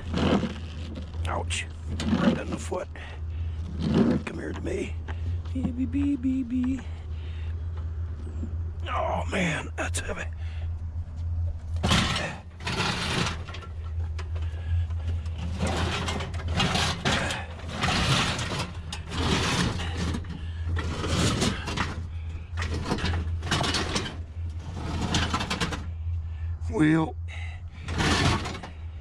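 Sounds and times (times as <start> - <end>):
scrap metal scraping and rustling: 0.0 - 2.7, 11.8 - 26.0, 27.8 - 28.9
steady low hum: 0.0 - 29.0.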